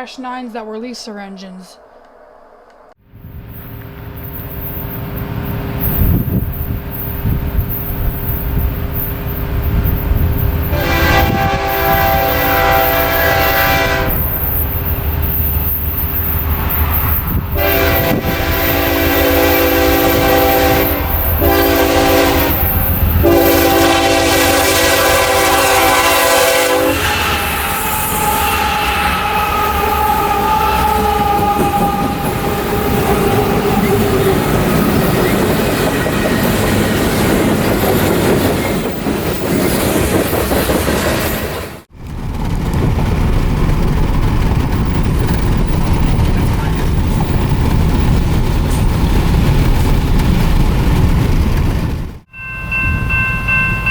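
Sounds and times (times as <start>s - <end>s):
freight train wheels clacking: 3.6s - 53.9s
locomotive air horn blasts: 10.7s - 14.4s, 17.6s - 34.9s.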